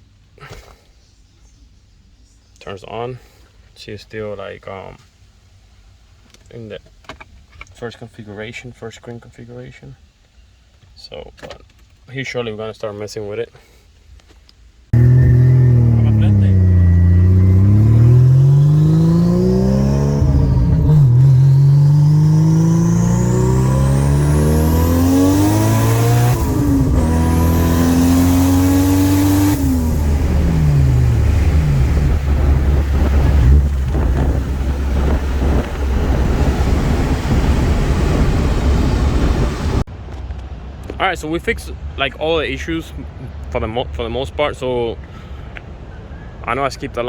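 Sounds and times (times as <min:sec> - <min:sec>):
car engine accelerating hard: 0:14.9 - 0:39.9
turbo whine: 0:15.0 - 0:39.8.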